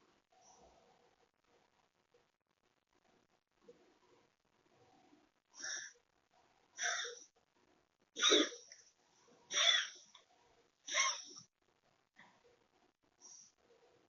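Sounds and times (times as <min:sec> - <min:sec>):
cat sneezing: 0:08.2 - 0:08.6.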